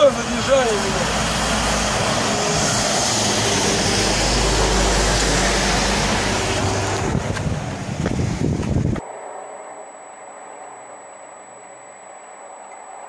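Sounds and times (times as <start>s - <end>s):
car road and wind noise: 0.0s - 9.1s.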